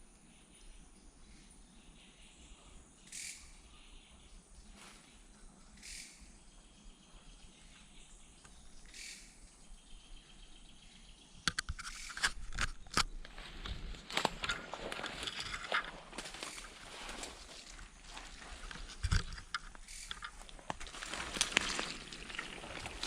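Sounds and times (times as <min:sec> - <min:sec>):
insects buzzing: 0:01.8 - 0:23.0
high bird calls: 0:03.0 - 0:12.4, 0:13.0 - 0:23.0
footsteps on dry leaves: 0:13.1 - 0:23.0.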